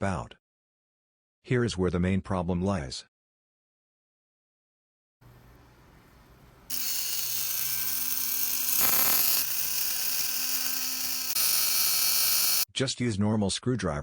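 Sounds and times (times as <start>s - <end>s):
electric toothbrush buzzing: 6.7s - 12.7s.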